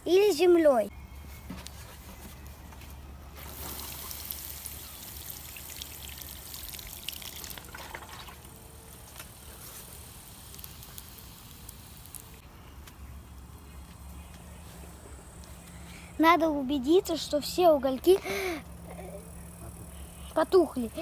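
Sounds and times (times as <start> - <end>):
faint water trickle: 3.4 - 12.4
water pouring onto campfire: 3.4 - 12.4.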